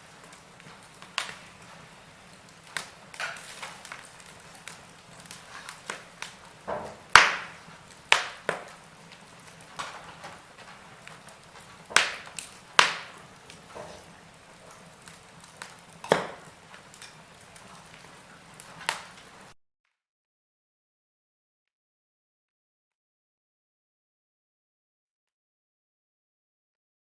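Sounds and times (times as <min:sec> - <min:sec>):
faint hiss of fire: 0:00.0 - 0:19.6
sharp pops of burning wood: 0:00.0 - 0:19.6
wood fire crackling: 0:00.0 - 0:19.6.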